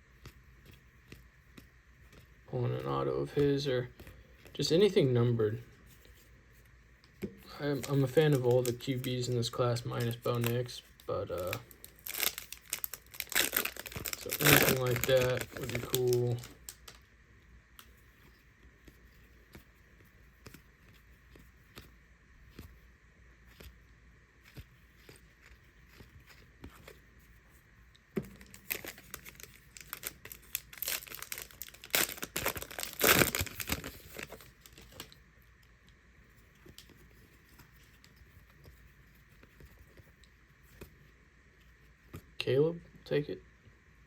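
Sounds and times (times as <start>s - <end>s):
cards ticking and sliding: 0.0s - 42.3s
wrappers crinkling and tearing: 7.4s - 17.0s, 28.4s - 35.2s.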